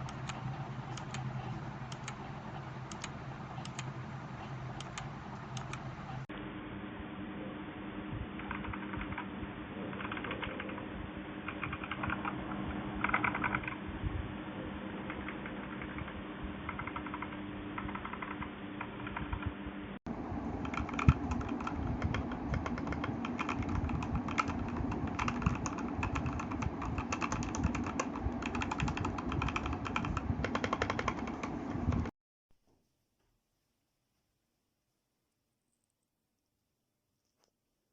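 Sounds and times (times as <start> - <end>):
mechanical keyboard typing: 0.0 - 2.3, 2.9 - 3.9, 8.4 - 9.2, 9.9 - 10.8, 11.5 - 12.4, 13.0 - 13.8, 15.1 - 19.5, 20.6 - 32.1.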